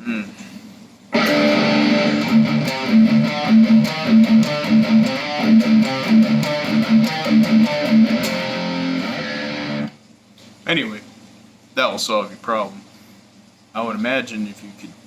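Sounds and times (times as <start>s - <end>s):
electric guitar riff: 1.2s - 10.0s.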